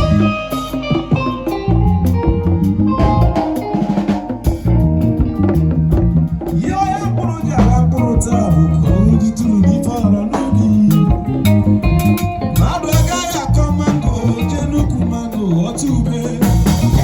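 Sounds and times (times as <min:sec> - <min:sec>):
band music with drums: 0:00.0 - 0:17.0.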